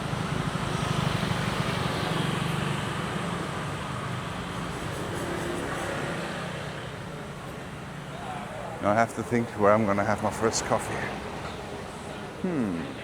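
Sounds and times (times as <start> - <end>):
traffic rumble: 7.7 - 13.0.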